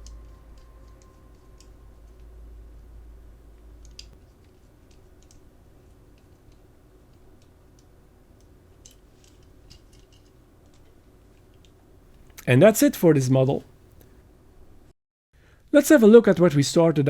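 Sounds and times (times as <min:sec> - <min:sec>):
low hum: 0:00.0 - 0:04.1.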